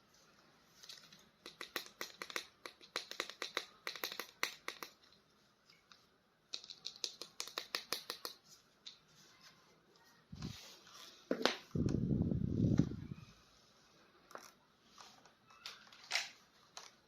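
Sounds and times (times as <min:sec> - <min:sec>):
plastic toy clicking and rattling: 0:00.9 - 0:05.0, 0:06.5 - 0:08.4.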